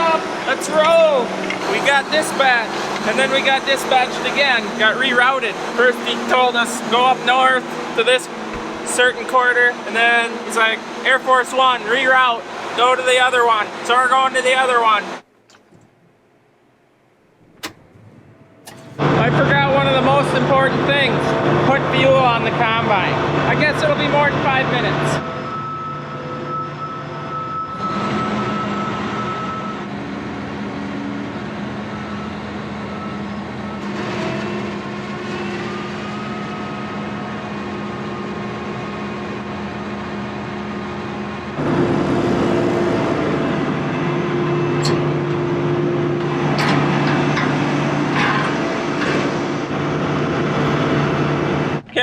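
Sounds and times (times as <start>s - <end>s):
engine running: 0.0s - 11.4s, 17.4s - 23.5s, 33.8s - 51.9s
louder low-pitched engine: 0.0s - 13.2s, 27.8s - 51.9s.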